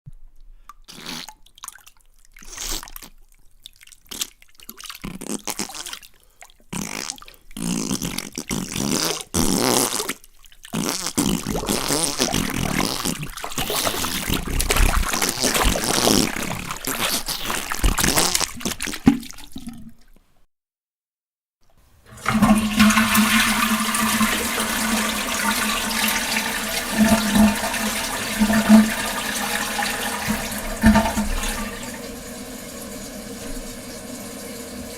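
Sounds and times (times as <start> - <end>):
wet sputtering farts: 0.8 - 1.4, 2.4 - 3.1, 4.1 - 6.1, 6.7 - 20.0, 22.3 - 32.0.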